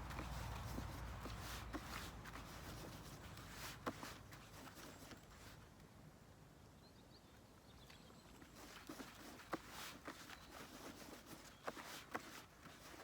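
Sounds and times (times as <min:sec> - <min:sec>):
groundbait rustling and scraping: 0:00.0 - 0:05.7, 0:08.3 - 0:13.0.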